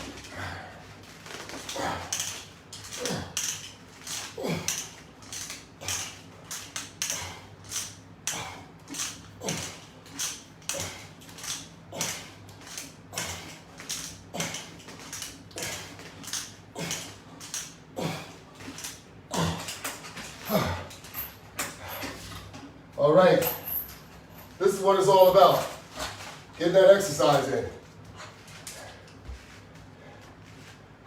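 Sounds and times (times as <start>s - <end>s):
exercise hardware clicking: 1.2s - 17.8s.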